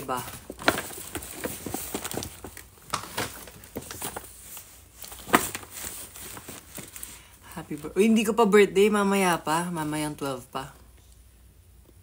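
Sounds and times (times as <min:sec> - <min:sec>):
packaging rustling: 0:00.0 - 0:08.2.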